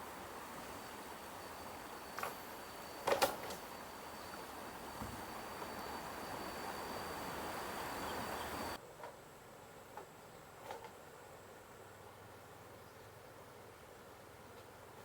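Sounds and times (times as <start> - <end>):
high insect drone: 0.0 - 8.8.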